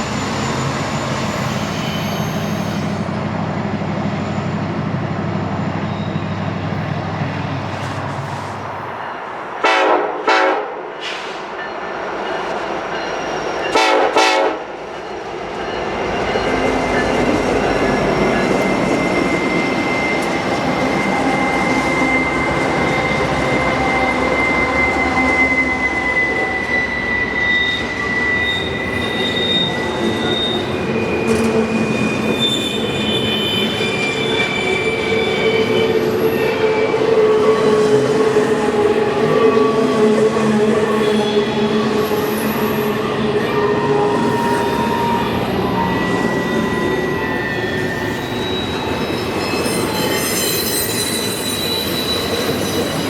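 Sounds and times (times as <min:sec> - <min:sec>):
high wheel squeal: 0:00.0 - 0:03.2, 0:05.6 - 0:06.8, 0:15.1 - 0:53.0
diesel locomotive droning: 0:00.0 - 0:53.0
rumble of rolling train cars: 0:00.0 - 0:53.0
train horn blasts: 0:09.6 - 0:10.9, 0:13.7 - 0:14.8.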